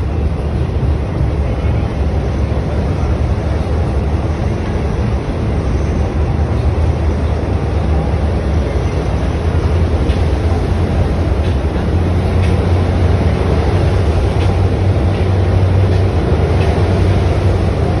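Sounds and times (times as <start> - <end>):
train rumbling on rails: 0.0 - 18.0
faint rail clicks: 9.2 - 17.9.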